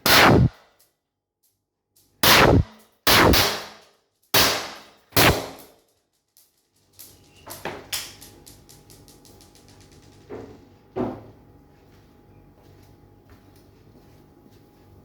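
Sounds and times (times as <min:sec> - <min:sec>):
air pistol shots: 0:00.0 - 0:00.6, 0:02.2 - 0:03.8, 0:04.4 - 0:05.7.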